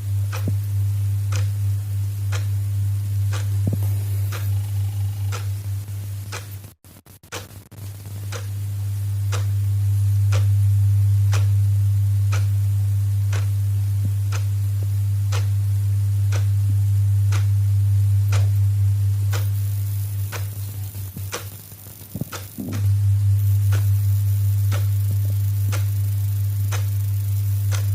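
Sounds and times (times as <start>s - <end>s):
steady low hum: 0.0s - 27.9s
clock ticking: 0.3s - 0.6s, 1.3s - 1.6s, 2.3s - 2.6s, 3.3s - 5.6s, 6.3s - 6.5s, 7.3s - 7.5s, 9.3s - 9.5s, 10.3s - 10.6s, 11.3s - 11.5s, 12.3s - 12.5s, 13.3s - 13.5s, 14.3s - 14.6s, 15.3s - 15.6s, 16.3s - 16.6s, 17.3s - 17.5s, 18.3s - 18.6s, 19.3s - 21.6s, 22.2s - 27.9s.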